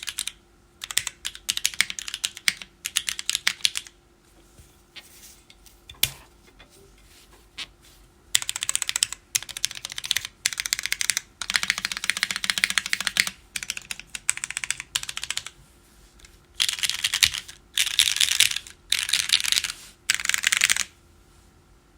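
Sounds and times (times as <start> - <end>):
mechanical keyboard typing: 0.0 - 3.9, 8.3 - 15.6, 16.6 - 20.9.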